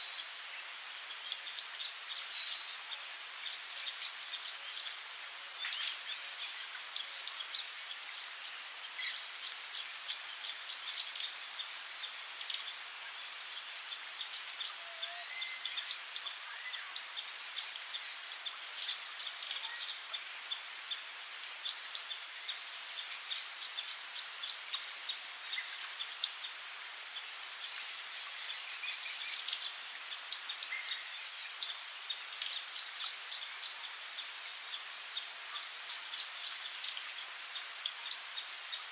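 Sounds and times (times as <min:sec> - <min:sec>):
insects chorus: 0:00.0 - 0:38.9
faint bird chirps: 0:37.9 - 0:38.9.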